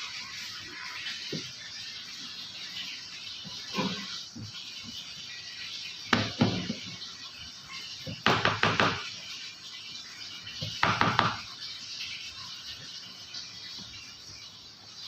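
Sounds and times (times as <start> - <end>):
sharp knocks and clatter: 8.1 - 9.1, 10.6 - 11.5.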